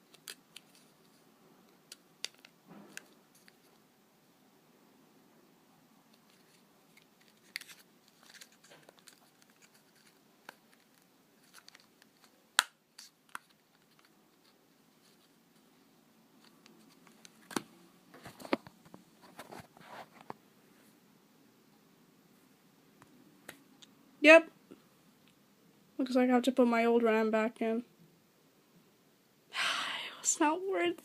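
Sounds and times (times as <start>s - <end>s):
hands handling small hard objects: 6.1s - 15.7s.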